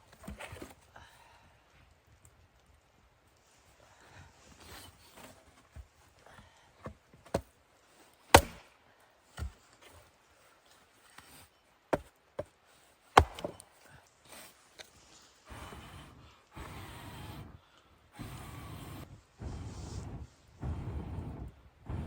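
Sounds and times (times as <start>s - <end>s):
axe chopping wood: 8.3s - 8.7s, 13.2s - 13.7s.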